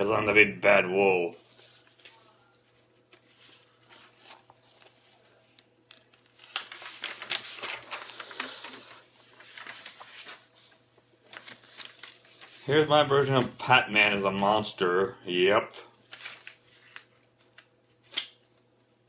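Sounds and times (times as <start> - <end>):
paper rustling and crinkling: 1.4 - 13.6, 16.0 - 18.9.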